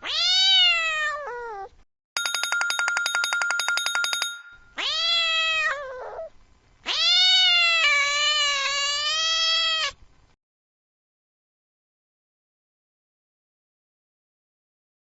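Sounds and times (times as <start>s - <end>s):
cat meowing: 0.0s - 1.7s, 4.8s - 10.0s.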